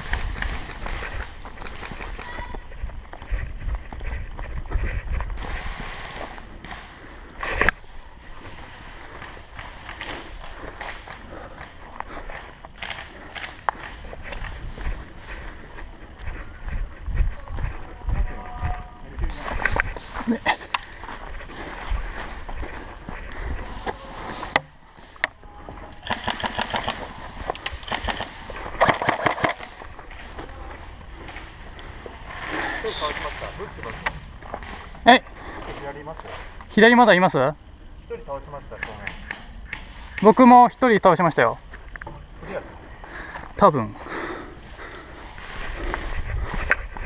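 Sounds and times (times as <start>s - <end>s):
footsteps rustling and scuffing: 10.2s - 25.9s, 44.6s - 47.0s
airsoft guns firing: 25.9s - 29.8s.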